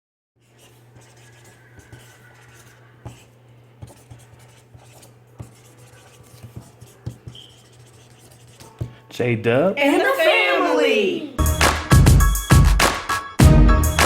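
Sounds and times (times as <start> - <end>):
faint rubbing and scratching: 0.4 - 8.9.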